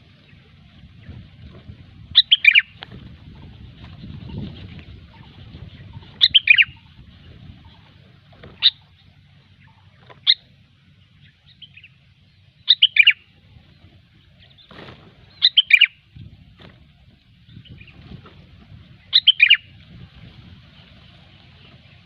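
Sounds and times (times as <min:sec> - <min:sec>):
bird calling bright notes: 0:02.2 - 0:02.8, 0:05.8 - 0:07.0, 0:12.6 - 0:13.4, 0:15.3 - 0:16.1, 0:19.1 - 0:19.7.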